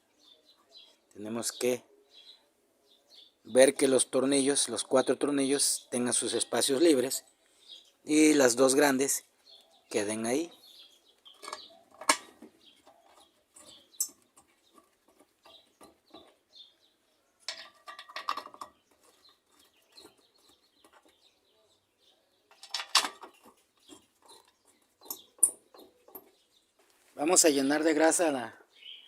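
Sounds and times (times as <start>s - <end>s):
metal parts clinking: 11.3s - 15.6s, 17.5s - 18.8s, 22.5s - 23.5s.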